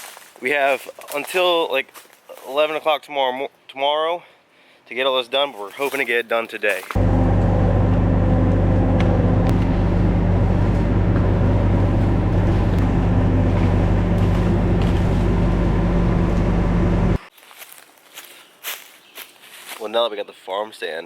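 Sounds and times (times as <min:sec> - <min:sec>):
diesel engine at high revs: 0:07.0 - 0:17.2.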